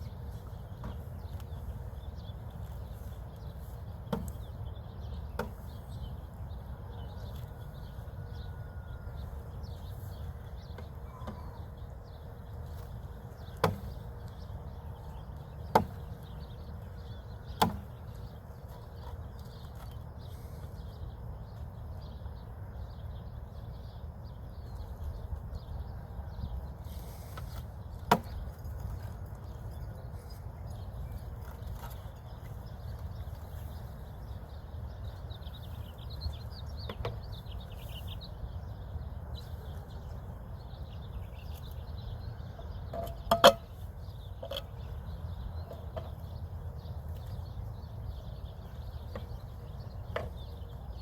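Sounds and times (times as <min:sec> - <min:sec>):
sharp wooden knocks: 0:15.7 - 0:16.0.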